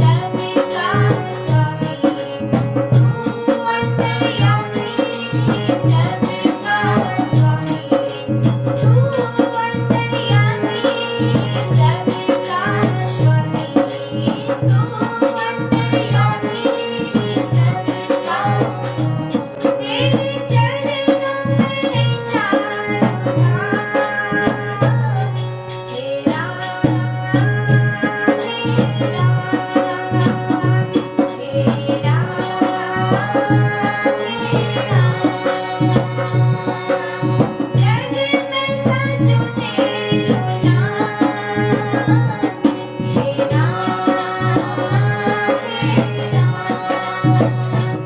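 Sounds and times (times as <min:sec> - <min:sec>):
tabla rhythm: 0:00.0 - 0:48.0.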